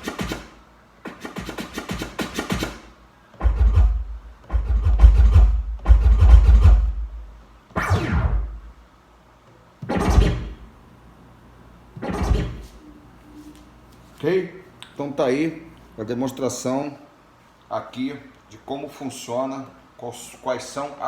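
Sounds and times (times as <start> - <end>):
speaker playing sound effects: 7.7 - 8.7, 9.8 - 10.7, 12.0 - 13.9.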